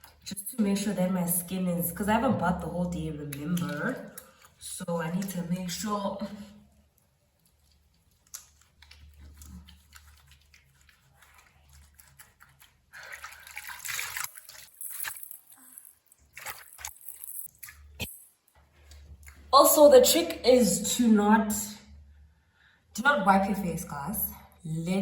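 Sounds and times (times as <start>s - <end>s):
water splashing and dripping: 2.0s - 19.5s.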